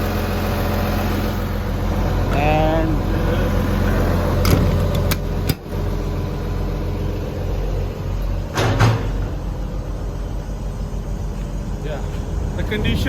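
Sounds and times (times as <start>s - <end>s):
diesel excavator idling: 0.0s - 13.0s
loud thump: 4.4s - 4.9s, 8.5s - 9.4s.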